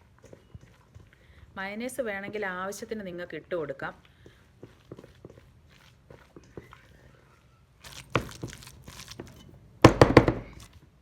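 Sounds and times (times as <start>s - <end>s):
spoon scraping a bowl: 0.0s - 1.2s, 4.2s - 9.6s.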